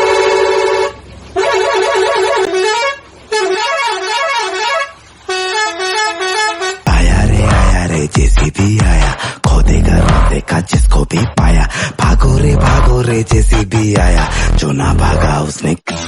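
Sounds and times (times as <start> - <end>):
electronic musical horn tooting: 0.0 - 7.6
music with heavy beat: 6.9 - 15.0.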